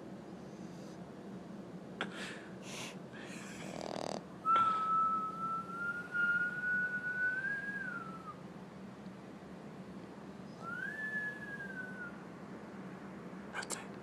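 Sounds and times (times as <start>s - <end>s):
short snorting breaths: 2.0s - 4.8s
puppy snoring: 2.7s - 4.8s
long thin whistle: 4.5s - 8.4s, 10.6s - 12.2s.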